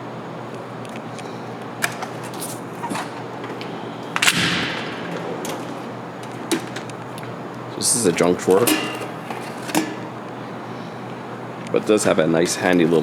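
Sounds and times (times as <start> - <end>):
steady low hum: 0.0 - 13.0
metal drawer shutting with a clank: 1.8 - 7.0, 8.1 - 10.1.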